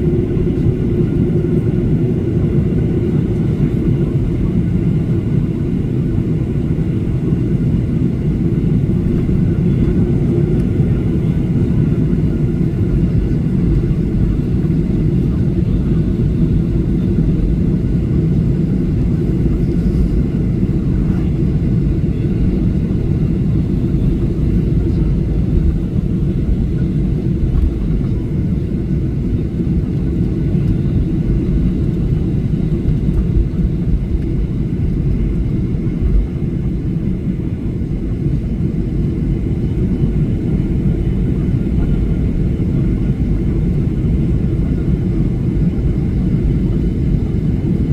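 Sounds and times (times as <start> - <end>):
airliner cabin rumble: 0.0 - 47.9.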